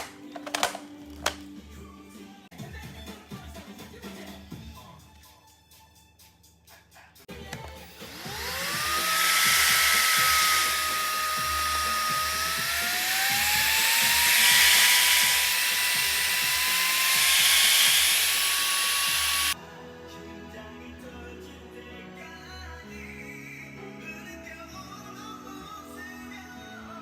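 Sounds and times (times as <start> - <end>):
vacuum cleaner motor whine: 7.6 - 19.6.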